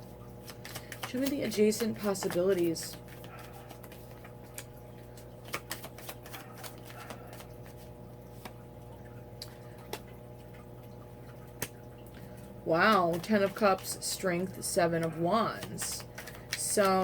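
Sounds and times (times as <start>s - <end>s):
cards clicking and tapping: 0.4s - 8.6s, 11.5s - 11.8s, 12.8s - 14.2s, 15.0s - 17.0s.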